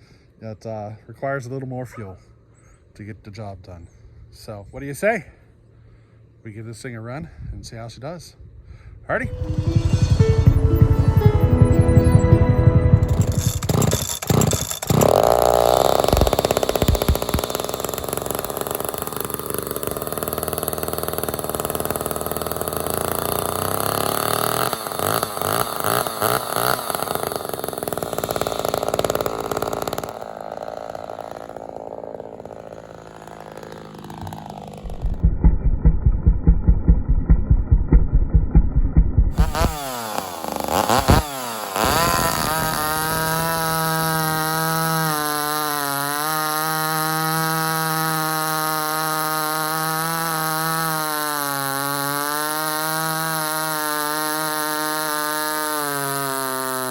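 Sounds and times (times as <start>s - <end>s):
chainsaw revving: 9.2s - 36.1s, 39.3s - 56.9s.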